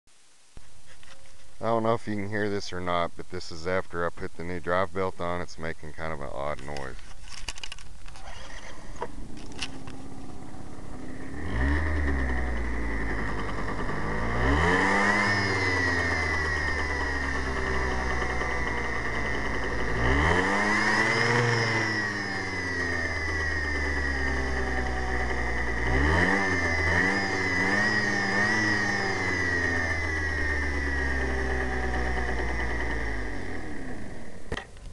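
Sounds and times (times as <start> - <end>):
high-pitched belt drive whirring: 8.1 - 34.6
scooter engine revving: 8.1 - 34.7.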